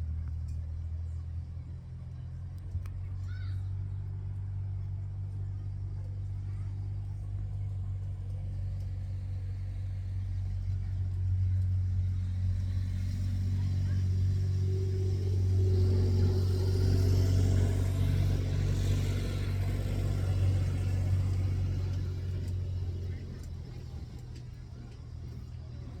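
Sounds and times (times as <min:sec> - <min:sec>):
low engine-like rumble: 0:00.0 - 0:26.0
faint clicks: 0:02.5 - 0:03.5.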